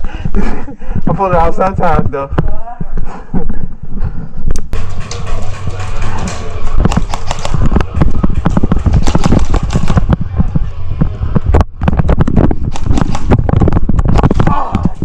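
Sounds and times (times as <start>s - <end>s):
low rumble: 3.0s - 15.0s
running footsteps: 3.0s - 15.0s
gear jolting microphone: 4.6s - 15.0s.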